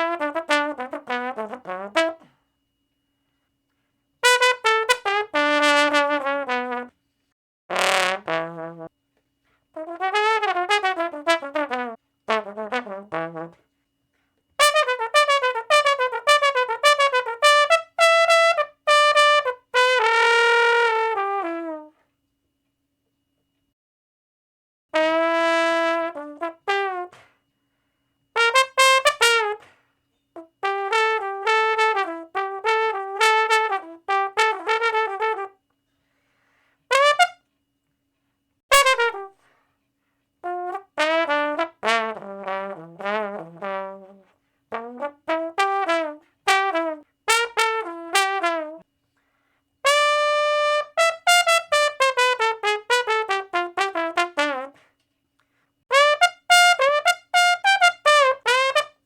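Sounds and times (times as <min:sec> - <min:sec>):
brass instrument playing: 0:00.0 - 0:02.3, 0:04.2 - 0:06.9, 0:07.7 - 0:08.9, 0:09.8 - 0:13.6, 0:14.6 - 0:21.9, 0:25.0 - 0:27.2, 0:28.4 - 0:29.7, 0:30.4 - 0:35.6, 0:36.9 - 0:37.4, 0:38.7 - 0:39.4, 0:40.4 - 0:48.8, 0:49.8 - 0:54.8, 0:55.9 - 0:59.0.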